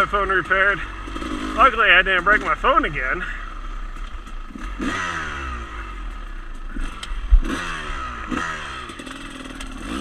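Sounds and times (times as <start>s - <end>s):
dirt bike engine revving: 0.0s - 10.0s.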